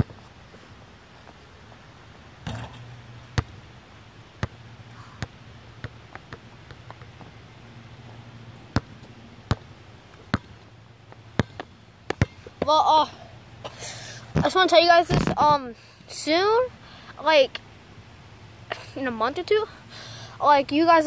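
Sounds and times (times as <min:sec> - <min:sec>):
basketball bouncing on court: 0:02.4 - 0:03.6, 0:04.4 - 0:04.6, 0:08.7 - 0:12.7.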